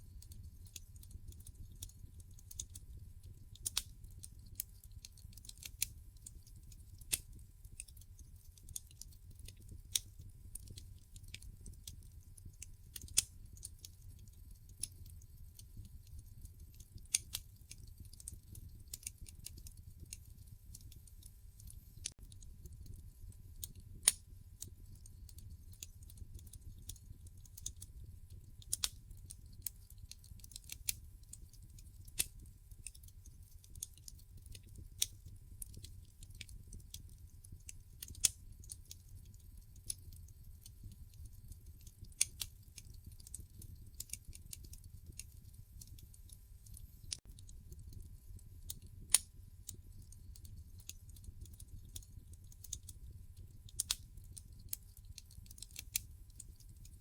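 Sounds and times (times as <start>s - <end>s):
low steady fire rumble: 0.0s - 57.0s
wood fire crackling and popping: 0.1s - 57.0s.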